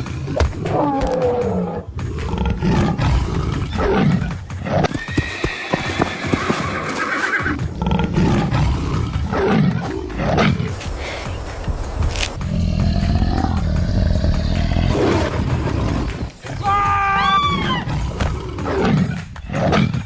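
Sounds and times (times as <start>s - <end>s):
animal gliding calls: 3.4s - 7.7s.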